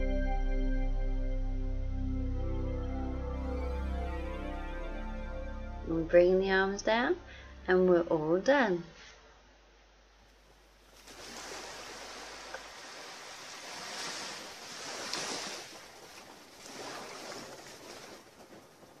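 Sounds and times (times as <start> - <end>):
ocean waves breaking: 10.8 - 19.0.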